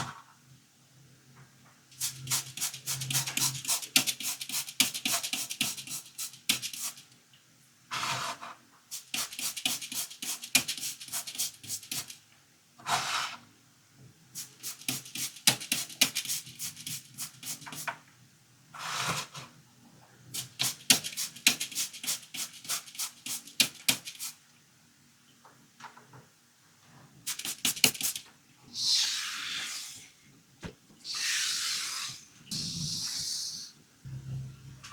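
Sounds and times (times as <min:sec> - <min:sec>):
short hissing bursts: 0:02.0 - 0:07.0, 0:14.4 - 0:17.8, 0:27.2 - 0:30.1, 0:31.0 - 0:33.8.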